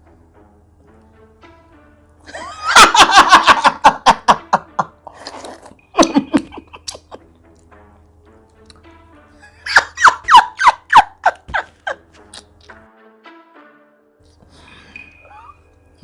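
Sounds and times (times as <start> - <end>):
faint background music: 0.0 - 16.0
woman laughing hard: 2.3 - 5.0, 6.0 - 7.2, 9.4 - 12.1.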